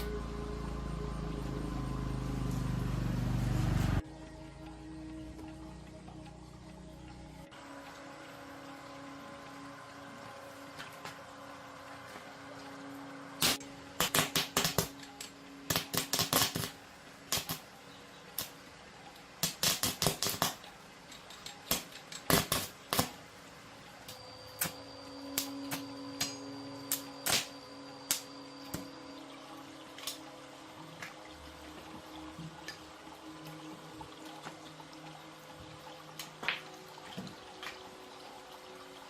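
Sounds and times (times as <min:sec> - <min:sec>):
faint steady hum: 0:00.0 - 0:39.0.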